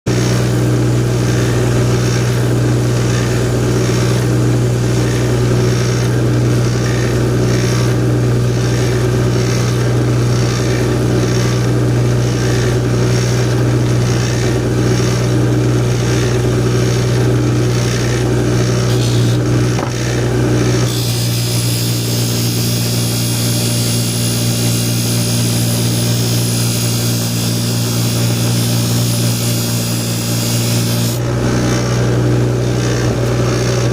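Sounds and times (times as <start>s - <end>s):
buffer motor humming: 16.6s - 31.4s
knife blade rubbing on wheel: 17.8s - 31.2s.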